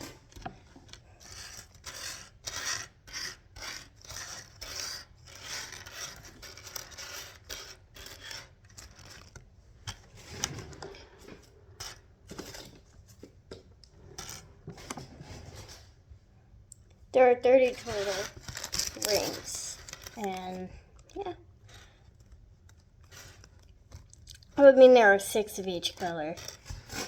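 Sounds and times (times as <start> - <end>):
acupressure rings rasping and scraping: 0.0 - 13.0, 14.0 - 15.9, 17.2 - 24.1, 24.8 - 27.0.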